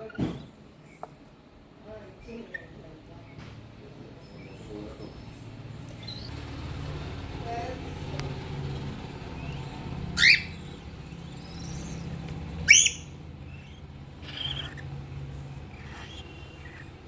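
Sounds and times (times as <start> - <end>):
bird chicks chirping: 4.1 - 17.0.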